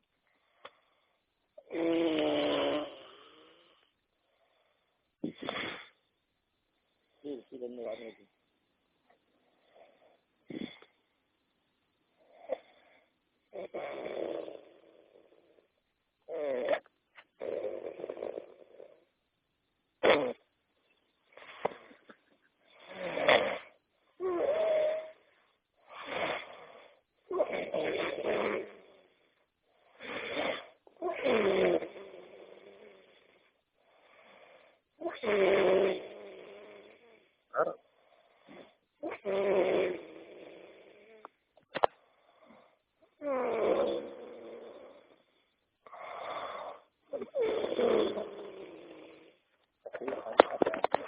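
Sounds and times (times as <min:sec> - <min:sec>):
man snoring: 0:01.6 - 0:03.8, 0:07.2 - 0:08.3, 0:13.5 - 0:15.6, 0:16.3 - 0:16.8, 0:22.7 - 0:25.2, 0:25.9 - 0:29.2, 0:30.0 - 0:37.8, 0:38.4 - 0:41.3, 0:43.2 - 0:45.2, 0:45.9 - 0:49.4.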